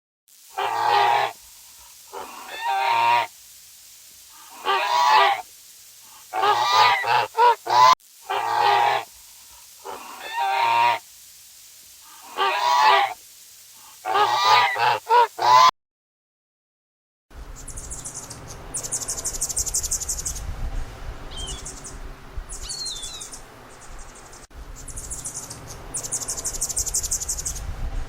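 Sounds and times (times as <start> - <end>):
animal calling: 0.6 - 1.4, 2.1 - 3.3, 4.3 - 5.5, 6.1 - 9.1, 9.8 - 11.0, 12.1 - 13.2, 14.0 - 15.7.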